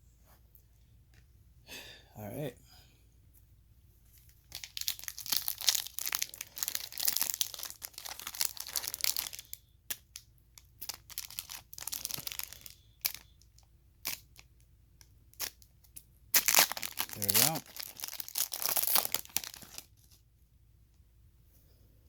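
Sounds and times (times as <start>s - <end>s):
foil pack tearing and crinkling: 4.5s - 9.6s, 10.8s - 13.3s, 16.3s - 20.2s.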